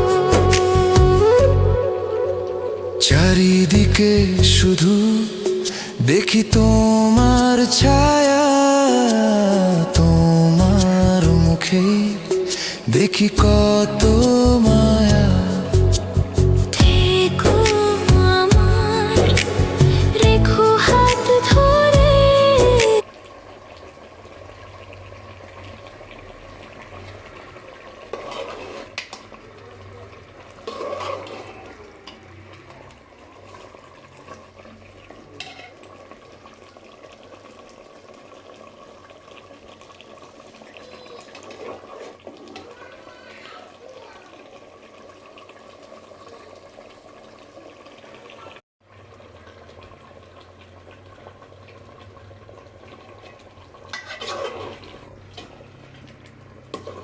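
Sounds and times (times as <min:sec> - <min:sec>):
utensil stirring in a pot: 0:28.0 - 0:29.2, 0:30.5 - 0:32.2, 0:53.2 - 0:57.0.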